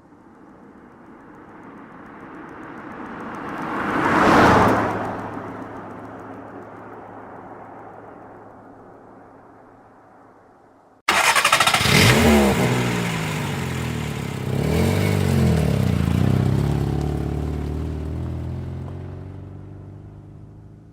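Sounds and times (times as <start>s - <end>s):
engine revving: 11.1s - 20.2s.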